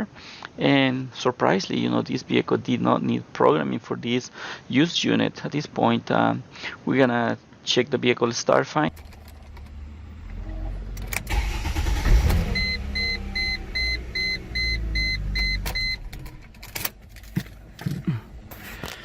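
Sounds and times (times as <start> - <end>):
car engine cranking and idling: 8.9 - 19.0
dashboard chime beeping: 12.4 - 16.1.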